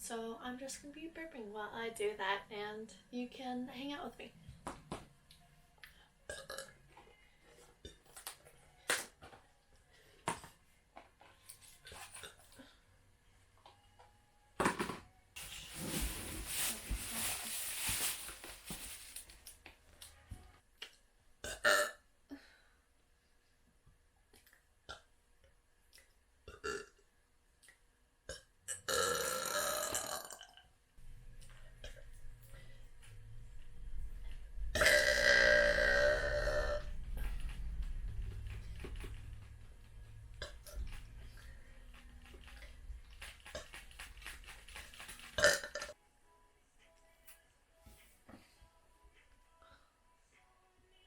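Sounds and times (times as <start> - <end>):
woman burping: 21.4 - 22.0, 28.3 - 30.6, 34.8 - 36.9, 45.4 - 45.9.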